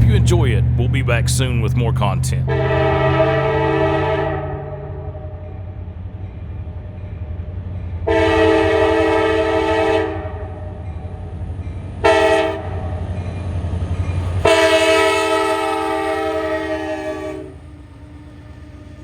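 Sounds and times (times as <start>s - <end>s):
locomotive engine rumbling: 0.0s - 19.0s
locomotive air horn blasts: 2.4s - 5.4s, 8.1s - 10.6s, 12.0s - 12.8s, 14.4s - 17.6s.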